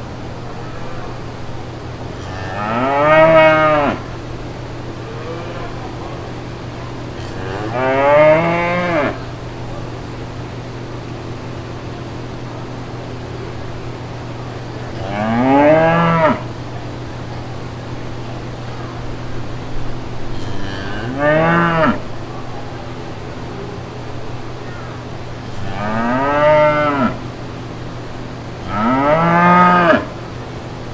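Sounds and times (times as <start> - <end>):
steady low hum: 0.0 - 30.9
cow mooing: 2.1 - 4.3, 5.0 - 9.8, 14.9 - 16.6, 20.3 - 22.1, 25.4 - 27.3, 28.6 - 30.2.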